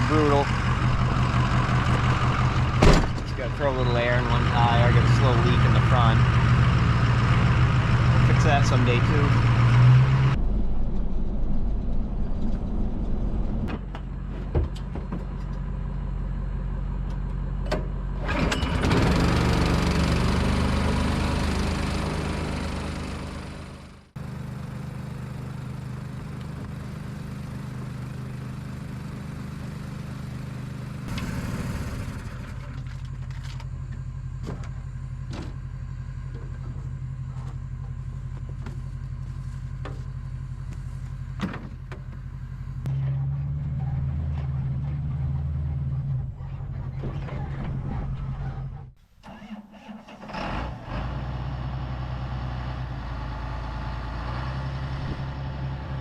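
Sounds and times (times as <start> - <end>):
tractor engine running: 0.0 - 56.0.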